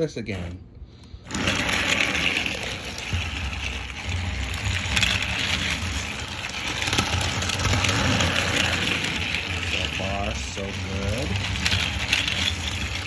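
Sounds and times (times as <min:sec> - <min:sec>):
small electric motor whirring: 0:01.2 - 0:13.0
toy train wheels rattling: 0:01.2 - 0:13.0.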